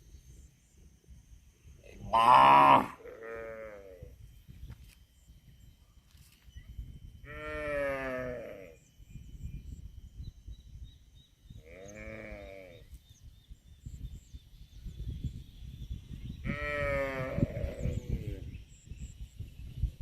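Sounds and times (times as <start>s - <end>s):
cow mooing: 2.1s - 4.1s, 7.3s - 8.8s.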